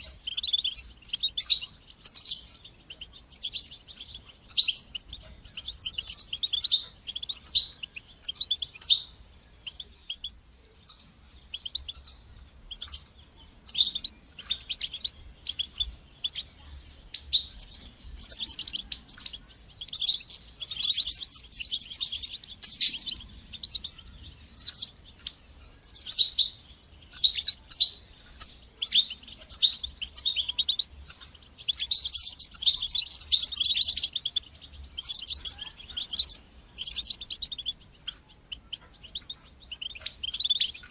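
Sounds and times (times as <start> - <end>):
goldfinch singing: 0.0 - 40.9.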